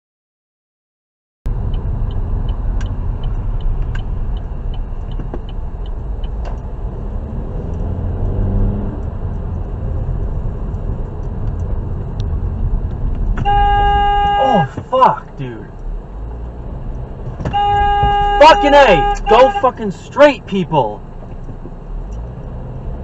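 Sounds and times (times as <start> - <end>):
car driving rumble: 1.5 - 23.0
car horn held: 13.4 - 15.1, 17.5 - 19.8.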